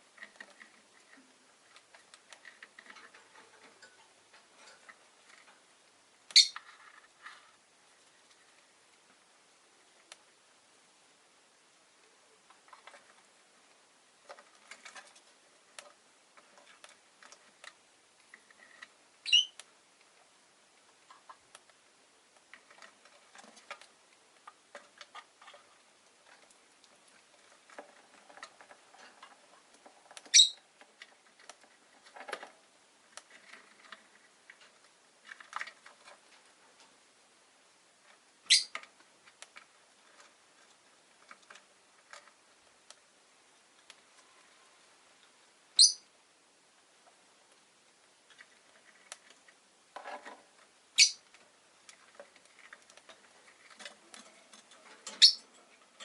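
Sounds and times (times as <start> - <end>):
lovebirds chirping: 6.3 - 6.6, 19.2 - 19.6, 30.3 - 30.6, 38.4 - 38.7, 45.7 - 46.1, 50.9 - 51.3, 55.1 - 55.5.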